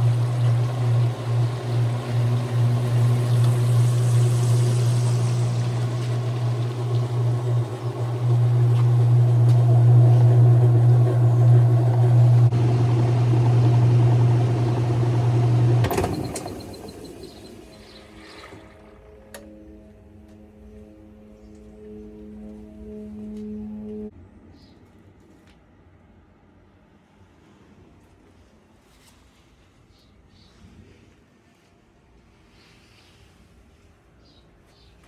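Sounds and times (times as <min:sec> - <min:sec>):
washing machine running: 0:00.0 - 0:20.0.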